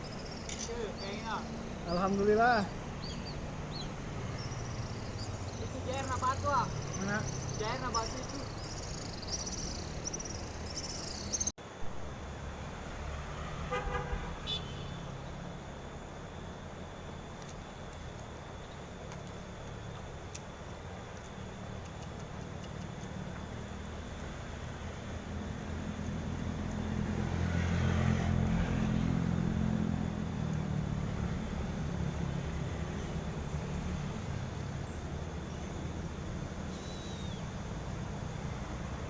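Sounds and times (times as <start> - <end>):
road traffic rumble: 0.0 - 39.0
vehicle engine humming: 0.0 - 39.0
car horn toot: 13.7 - 15.1.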